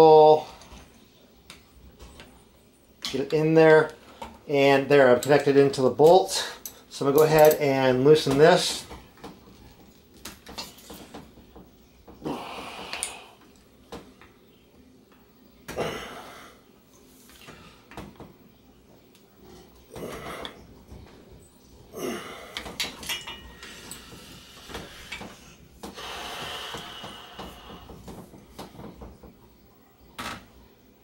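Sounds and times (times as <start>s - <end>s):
metal tool clinking and scraping: 22.8s - 24.1s.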